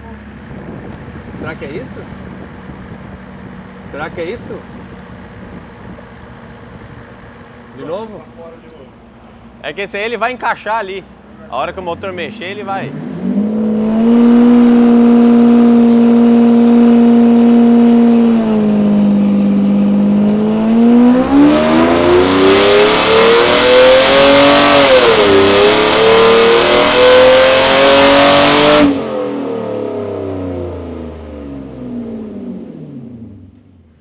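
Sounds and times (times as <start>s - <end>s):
car engine revving on dynamometer: 11.6s - 33.6s.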